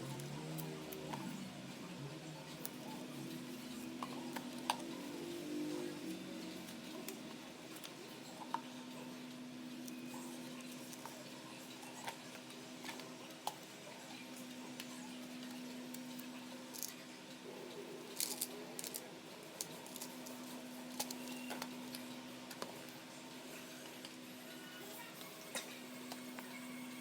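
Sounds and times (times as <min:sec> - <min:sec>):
small objects clicking and tapping: 0:18.1 - 0:19.0.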